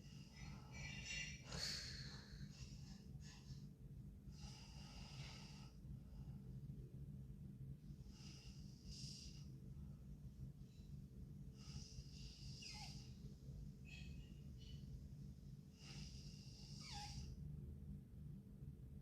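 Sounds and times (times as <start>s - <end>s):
steady low hum: 0.0s - 19.0s
girl breathing wheezily: 0.3s - 3.7s.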